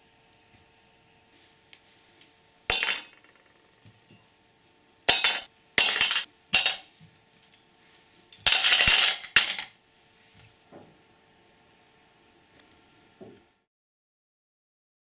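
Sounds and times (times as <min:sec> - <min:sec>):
metal parts rattling: 0:05.1 - 0:06.9, 0:08.3 - 0:09.7
metallic clatters and clinks: 0:08.3 - 0:09.7.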